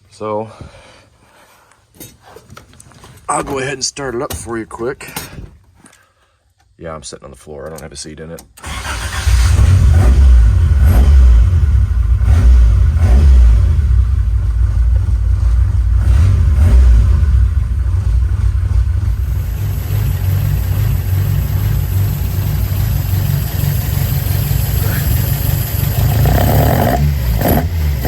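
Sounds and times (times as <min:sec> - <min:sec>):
car engine revving and idling: 0:08.8 - 0:28.0.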